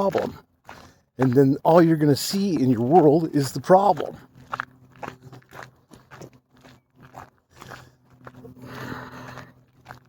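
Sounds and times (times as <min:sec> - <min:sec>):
faint low hum: 0:00.0 - 0:10.0
footsteps crunching on a trail: 0:00.0 - 0:10.0.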